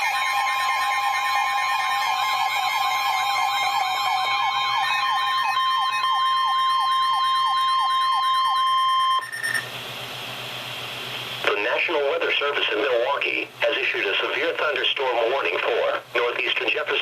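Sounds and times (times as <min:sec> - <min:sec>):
steady warning alarm tone: 0:00.0 - 0:09.7
sweeping electronic siren alarm: 0:00.0 - 0:09.7
radio hiss: 0:10.8 - 0:17.0.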